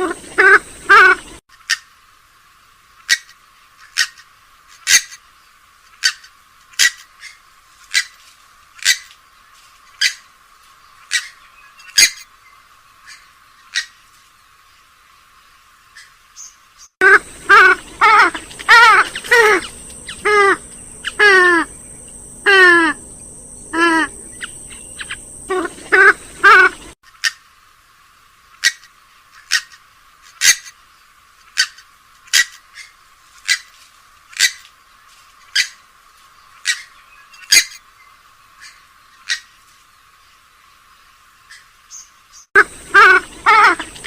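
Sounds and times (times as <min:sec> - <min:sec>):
bird squawks falling in pitch: 0:17.0 - 0:23.1, 0:23.7 - 0:27.4, 0:42.6 - 0:44.0.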